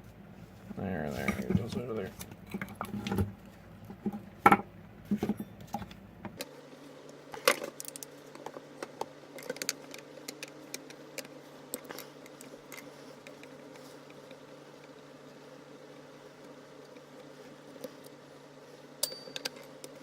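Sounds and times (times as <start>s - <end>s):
faint steady hum: 0.0s - 20.0s
metal screws and tools clinking: 19.0s - 19.7s.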